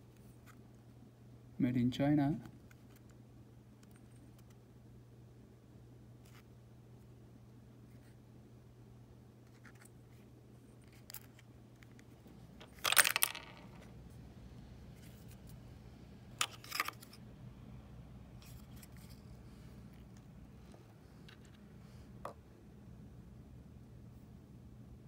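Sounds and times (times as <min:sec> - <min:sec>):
small hard parts clinking on table: 0:12.6 - 0:13.9.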